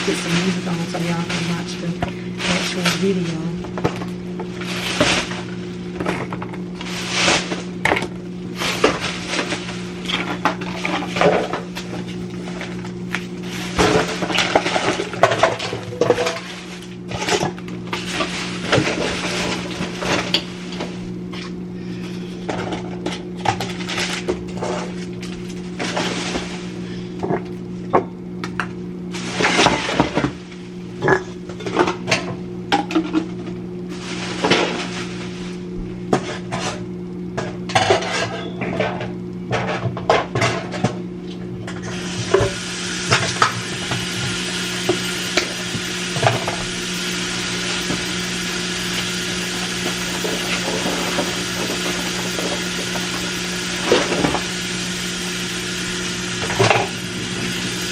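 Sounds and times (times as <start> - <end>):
steady low hum: 0.0 - 57.9
dishes and containers clattering: 13.7 - 20.5, 37.4 - 41.0, 49.7 - 54.4.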